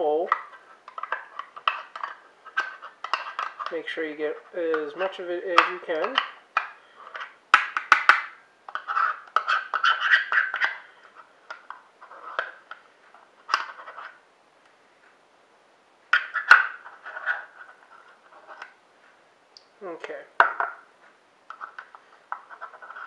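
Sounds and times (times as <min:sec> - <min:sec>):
spoon scraping plastic container: 0:08.7 - 0:11.2, 0:16.2 - 0:18.8, 0:21.5 - 0:23.0.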